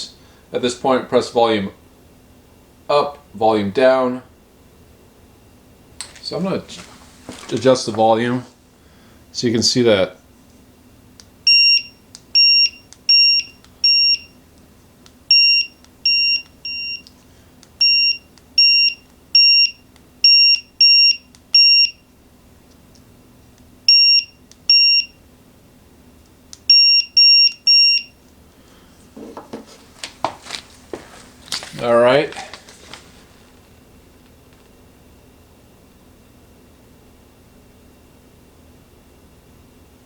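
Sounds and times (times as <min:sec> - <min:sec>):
kitchen timer beeps: 0:11.5 - 0:14.4, 0:15.3 - 0:17.1, 0:17.8 - 0:22.0, 0:23.9 - 0:25.2, 0:26.7 - 0:28.2.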